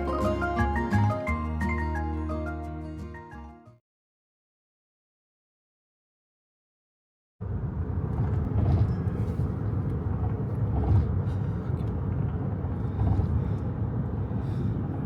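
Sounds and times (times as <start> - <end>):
car road and engine rumble: 7.4 - 15.0.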